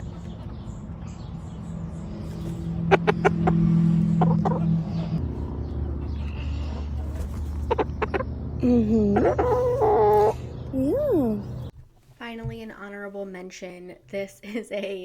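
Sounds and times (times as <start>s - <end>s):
rooster clucking: 2.9s - 5.2s, 6.0s - 8.5s, 9.1s - 10.5s.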